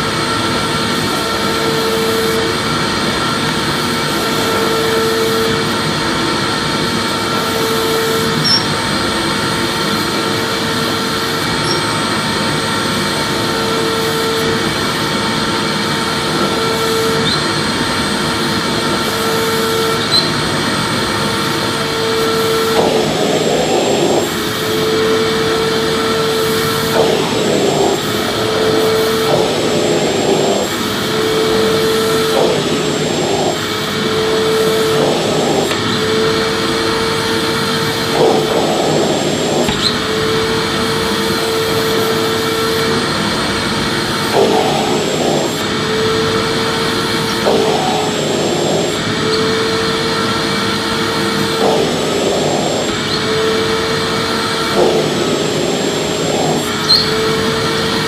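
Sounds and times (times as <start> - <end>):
vacuum cleaner running: 0.0 - 58.0.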